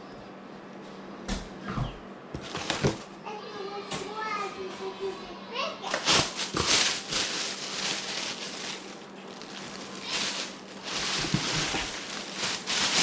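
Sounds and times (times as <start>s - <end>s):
faint steady hum: 0.0s - 13.0s
packaging rustling and crinkling: 2.4s - 3.1s, 5.9s - 13.0s.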